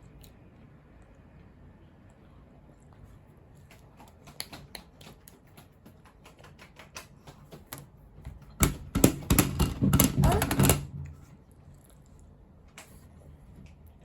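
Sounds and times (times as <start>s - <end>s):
toddler eating with smacks: 0.0s - 8.6s.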